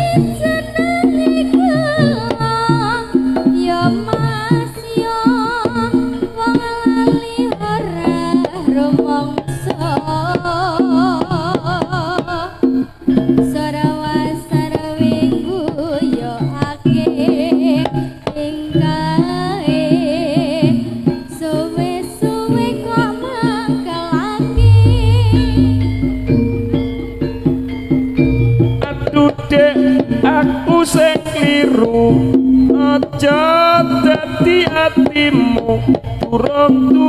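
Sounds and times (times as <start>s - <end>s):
hand drums playing dense rhythm: 24.5s - 28.8s
wavering melody with vibrato: 24.6s - 28.4s.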